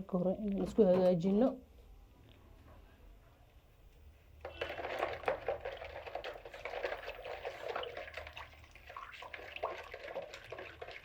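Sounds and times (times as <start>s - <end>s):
liquid mixed in a bowl: 4.3s - 11.0s.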